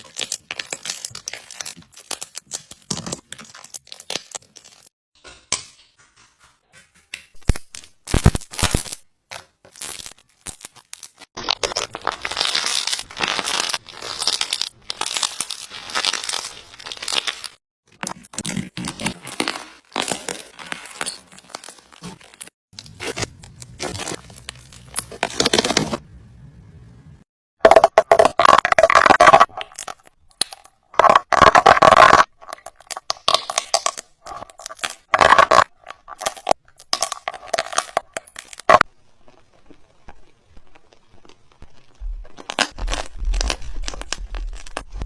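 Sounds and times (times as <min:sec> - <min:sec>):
slime crackling and popping: 0:00.0 - 0:04.9, 0:07.4 - 0:09.0, 0:09.7 - 0:17.6, 0:27.6 - 0:45.0.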